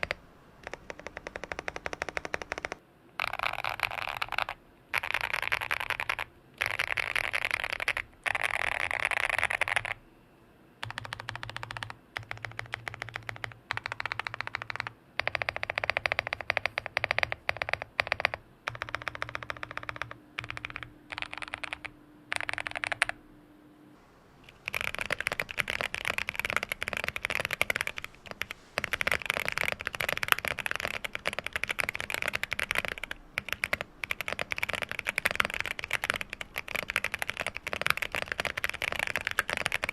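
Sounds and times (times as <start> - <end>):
fast typing on mechanical keyboard: 0.0 - 10.0, 10.8 - 23.2, 24.4 - 39.9
mechanical keyboard key mashing: 10.8 - 23.1, 24.5 - 39.9.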